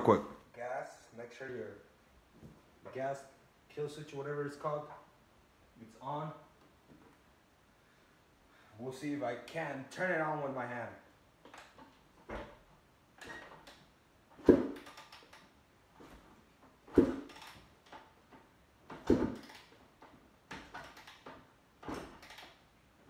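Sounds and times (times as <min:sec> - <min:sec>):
kickstarter thumps: 0:14.4 - 0:14.9, 0:16.0 - 0:17.4, 0:18.9 - 0:19.5.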